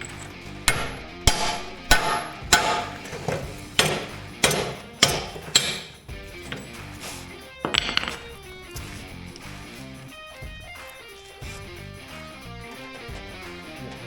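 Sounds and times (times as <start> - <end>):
hammer striking metal: 0.0 - 6.9, 7.6 - 8.5.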